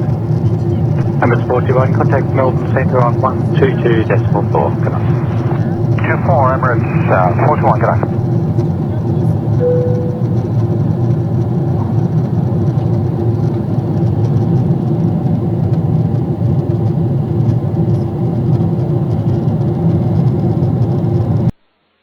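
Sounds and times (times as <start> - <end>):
airplane cabin low rumble: 0.0 - 21.5
faint steady hum: 0.7 - 10.9.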